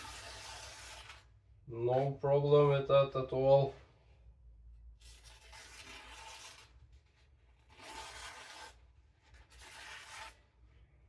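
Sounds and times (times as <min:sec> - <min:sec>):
cleaver slicing paper: 0:00.0 - 0:01.3, 0:05.0 - 0:10.4.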